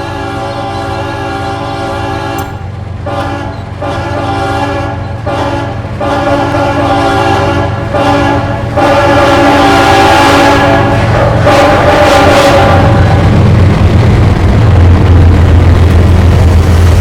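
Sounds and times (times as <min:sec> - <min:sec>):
train horn blasts: 0:00.0 - 0:13.4
low rumble: 0:12.8 - 0:17.0.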